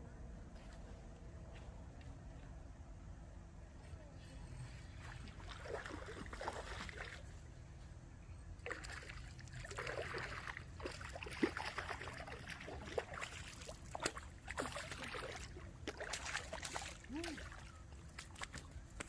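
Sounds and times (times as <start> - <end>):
water sloshing and trickling: 4.7 - 19.0.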